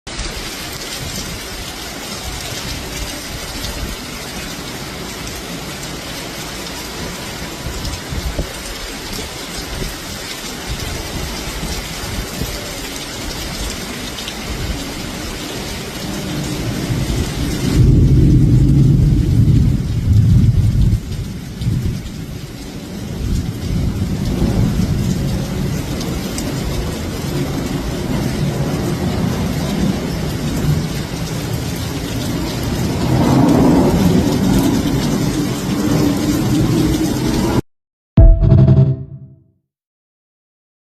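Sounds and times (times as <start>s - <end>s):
heavy rain pouring: 0.1s - 37.6s
wind rumbling on microphone: 6.9s - 13.8s, 14.4s - 22.4s.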